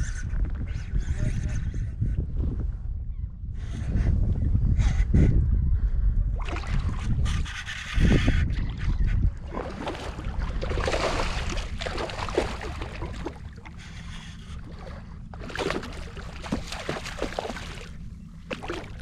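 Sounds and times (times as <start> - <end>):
wind on microphone: 0.0 - 19.0
shallow water splashing: 6.4 - 7.2, 8.6 - 19.0.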